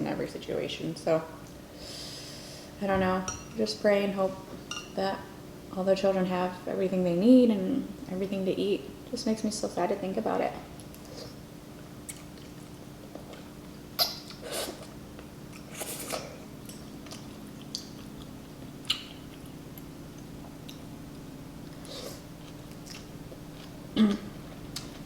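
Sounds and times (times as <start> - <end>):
steady low hum: 0.0 - 25.0
chewing and wet mouth sounds: 12.0 - 25.0.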